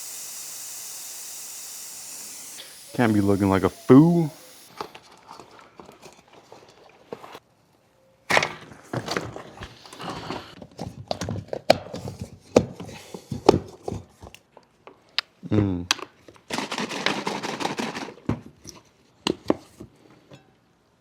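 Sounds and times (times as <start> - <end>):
bicycle wheel clicking and rubbing: 0.0 - 4.8.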